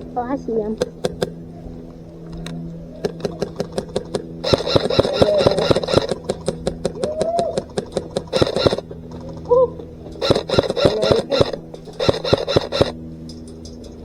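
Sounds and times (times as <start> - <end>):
steady low hum: 0.0 - 14.0
airsoft gun shots: 3.1 - 7.0, 8.0 - 8.8, 10.2 - 13.0.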